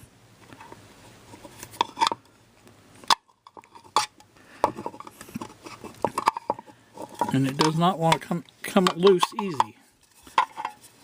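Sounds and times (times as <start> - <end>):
side cutters clicking and scraping: 3.4 - 10.9.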